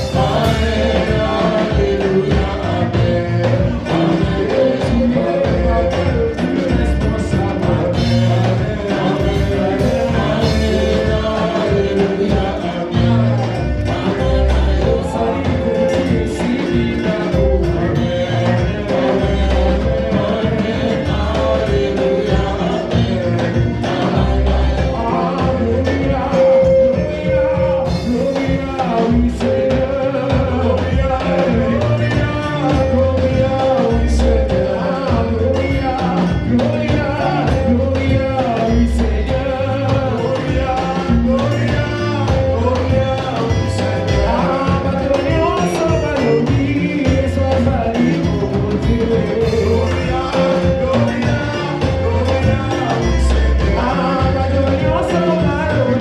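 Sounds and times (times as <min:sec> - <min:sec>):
gospel band playing: 0:00.0 - 0:56.0
people singing: 0:00.0 - 0:56.0.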